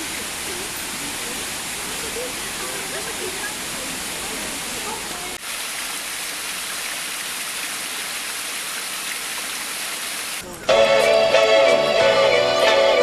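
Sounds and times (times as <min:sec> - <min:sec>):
outdoor background hiss: 0:00.0 - 0:11.3
background music with guitar: 0:10.7 - 0:13.0.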